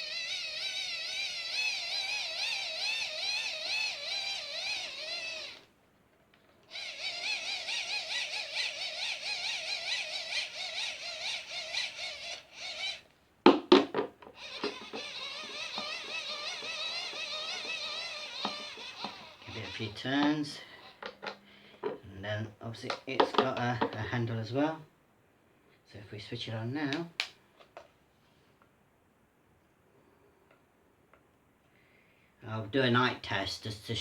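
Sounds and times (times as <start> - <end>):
hand-crank dynamo whining: 0.0 - 5.7, 6.6 - 13.1, 13.7 - 22.1
sharp clicks: 14.2 - 22.0, 26.9 - 27.8.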